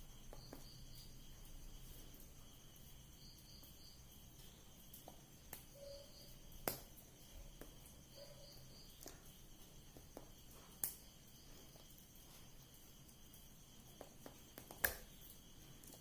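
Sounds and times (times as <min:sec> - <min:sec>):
faint high chirps: 0:05.5 - 0:06.6.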